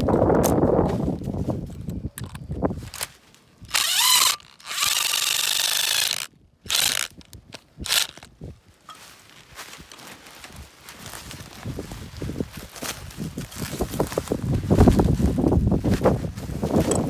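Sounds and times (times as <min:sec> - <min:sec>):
electric drill whining: 0:03.7 - 0:07.2, 0:07.8 - 0:08.3.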